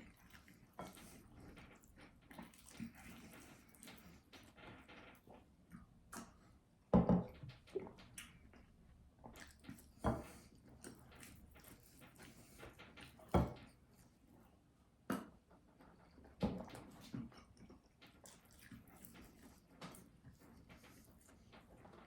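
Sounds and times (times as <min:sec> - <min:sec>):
chewing and mouth noises: 0:00.0 - 0:06.4, 0:07.5 - 0:14.2, 0:16.1 - 0:22.0.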